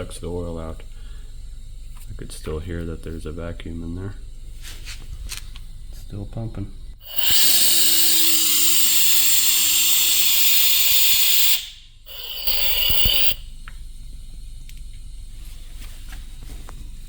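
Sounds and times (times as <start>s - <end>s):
compressed air hissing: 6.9s - 13.6s.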